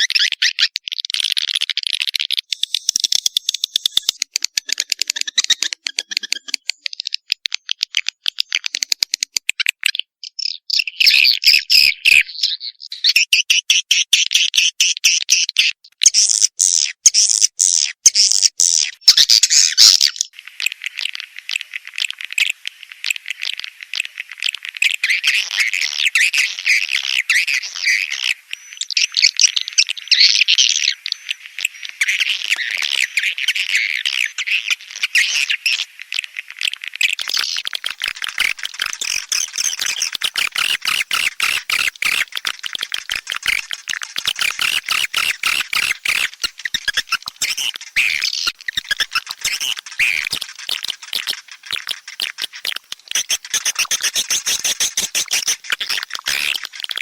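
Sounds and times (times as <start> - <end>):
swiftlet chirps and twitters: 2.4 - 7.3, 37.2 - 57.0.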